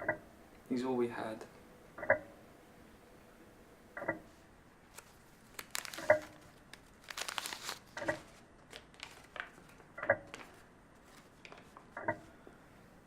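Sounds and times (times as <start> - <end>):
clock ticking: 2.0 - 2.3, 4.0 - 4.2
paper rustling and tearing: 4.9 - 11.4.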